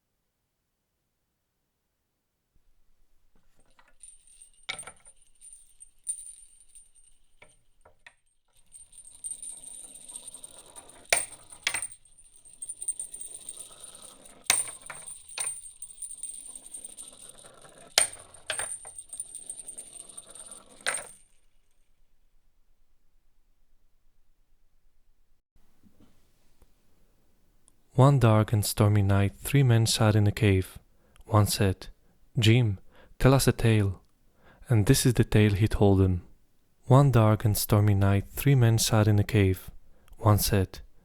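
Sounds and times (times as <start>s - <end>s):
toy jingling rattle: 3.8s - 7.8s, 8.6s - 21.3s.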